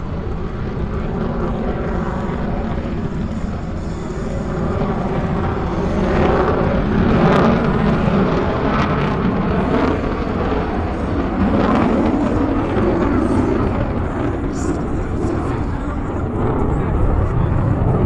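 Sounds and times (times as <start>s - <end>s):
fighter jet engine roar: 0.0s - 18.0s.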